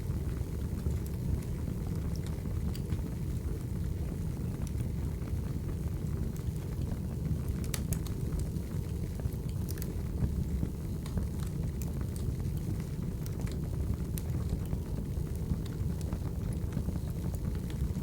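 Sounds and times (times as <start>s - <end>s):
low rumble of fire: 0.0s - 18.0s
logs crackling and popping: 0.3s - 3.1s, 6.3s - 18.0s.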